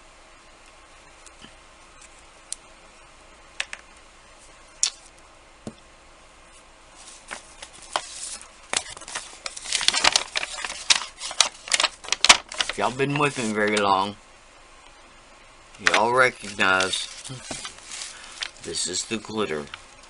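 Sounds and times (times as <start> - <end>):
craft supplies rattling and rustling: 7.2 - 13.8.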